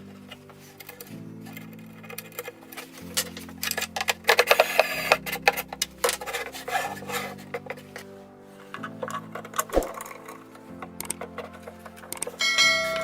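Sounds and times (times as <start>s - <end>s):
music with low sustained chords: 0.0s - 13.0s
rasping scraping and clicking: 0.0s - 13.0s.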